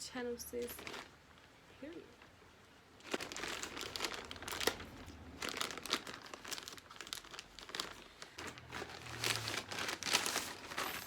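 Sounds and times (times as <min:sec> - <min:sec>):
packaging crinkling: 0:00.6 - 0:01.2, 0:03.0 - 0:11.0.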